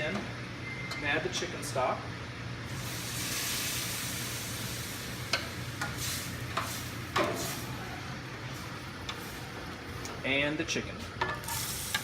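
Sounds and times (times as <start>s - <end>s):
stock hissing in hot pan: 11.5s - 12.0s.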